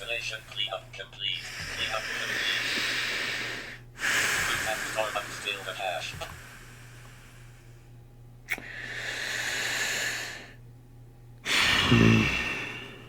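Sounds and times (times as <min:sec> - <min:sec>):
man breathing in deeply: 0:01.4 - 0:07.9, 0:11.4 - 0:13.0
man sighing: 0:11.5 - 0:12.9.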